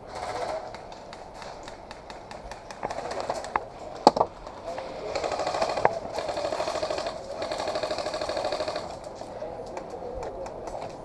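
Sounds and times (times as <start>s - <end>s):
airsoft gun firing full auto: 5.2s - 9.0s.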